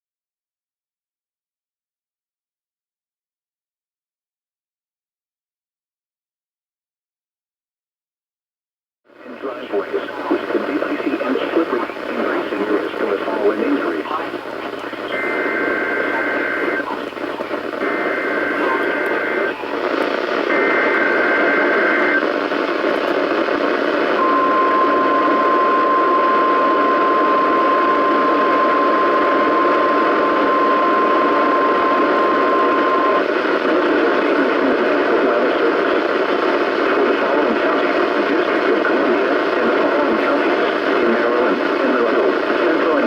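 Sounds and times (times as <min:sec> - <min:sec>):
radio static: 0:09.1 - 0:43.0
steady warning alarm tone: 0:14.2 - 0:17.0, 0:17.7 - 0:19.8.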